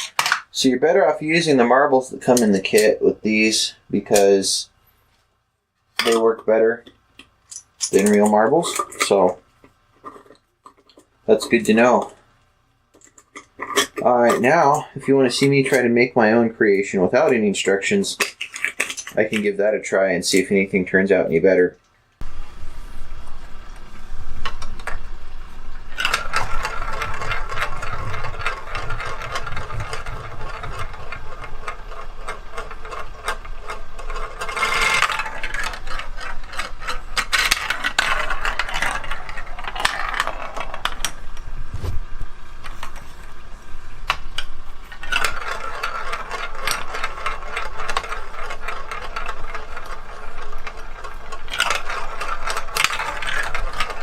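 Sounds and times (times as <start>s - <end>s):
plastic blocks clattering: 0.0s - 2.9s, 7.5s - 9.4s, 17.2s - 19.5s, 25.9s - 41.5s, 44.0s - 54.0s.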